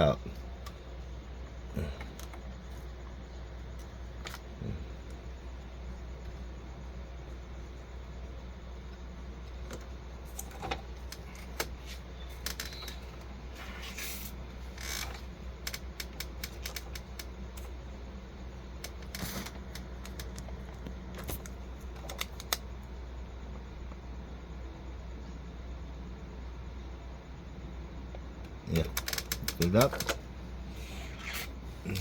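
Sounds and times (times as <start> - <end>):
steady low hum: 0.0 - 32.0
small clicks and taps: 19.7 - 22.6.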